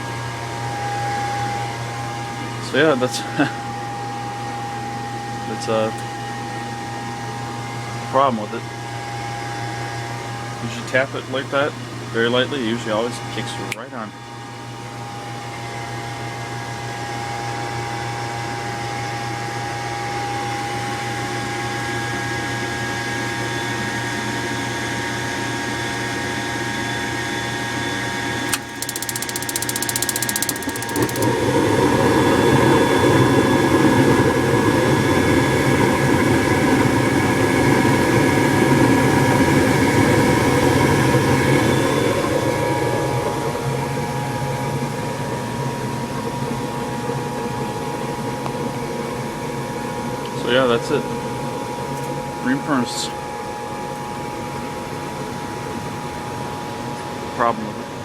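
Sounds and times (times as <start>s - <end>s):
inducer motor humming: 28.4s - 35.0s
fast ticking: 28.5s - 31.3s
switch click: 28.5s - 31.3s.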